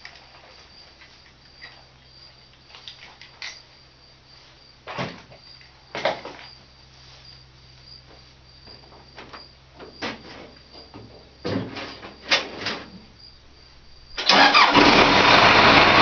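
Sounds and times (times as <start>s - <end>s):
insects chirping: 0.0s - 16.0s
sharp knocks and clunks: 8.7s - 13.0s.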